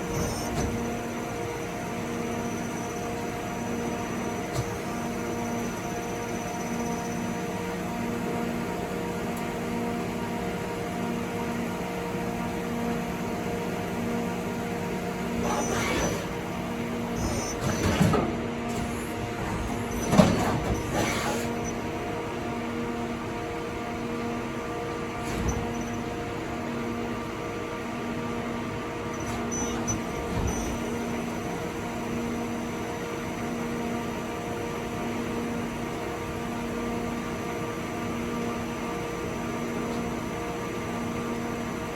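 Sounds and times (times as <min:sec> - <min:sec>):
mechanical clunks and rattles: 0:00.0 - 0:01.0, 0:17.1 - 0:21.8, 0:25.0 - 0:26.5, 0:29.0 - 0:31.6
lathe electrical hum: 0:00.0 - 0:41.9.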